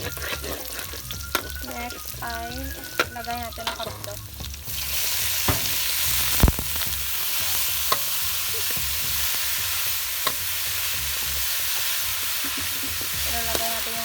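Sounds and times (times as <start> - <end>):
food sizzling in oil: 0.0 - 14.0.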